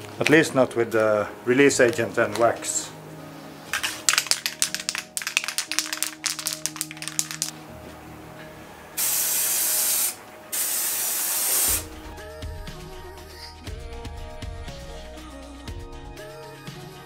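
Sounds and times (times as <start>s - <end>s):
spray can rattling: 3.7s - 7.6s, 9.0s - 11.9s
spray can hissing: 3.8s - 7.5s, 9.0s - 11.9s.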